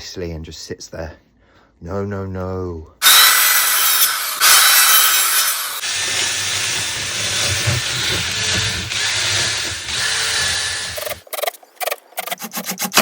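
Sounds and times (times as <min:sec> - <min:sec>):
power tool cutting wood: 0:03.0 - 0:11.2.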